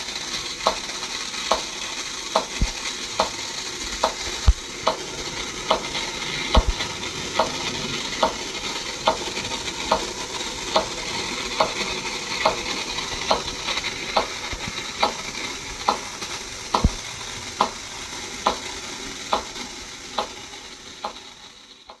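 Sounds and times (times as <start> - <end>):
balls rattling in toy machine: 0.0 - 21.9
sharp mechanical clicks: 0.2 - 21.3.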